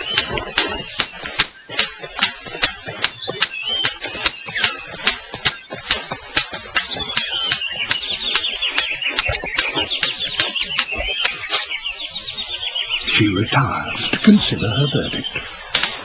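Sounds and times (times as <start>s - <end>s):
bird sharp clicks: 0.0s - 11.9s, 15.2s - 16.0s
bird chattering calls: 0.0s - 16.0s.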